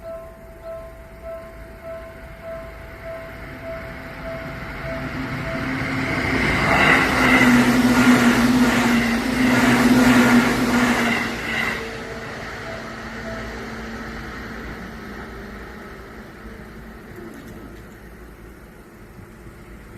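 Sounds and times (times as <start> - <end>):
train passing: 0.0 - 19.9.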